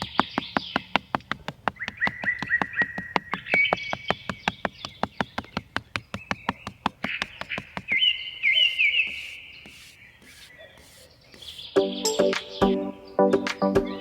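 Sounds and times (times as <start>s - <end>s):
fast even ticking: 0.0s - 8.0s
birds chirping: 0.0s - 14.0s.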